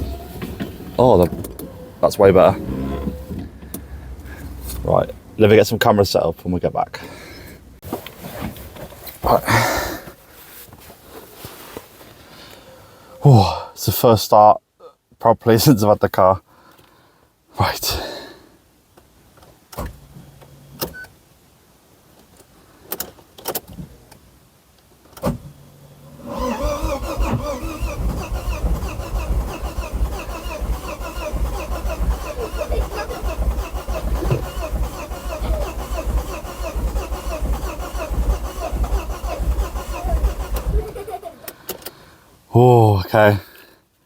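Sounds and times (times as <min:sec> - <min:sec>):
engine cranking by starter motor: 0:00.0 - 0:04.9, 0:26.1 - 0:42.0.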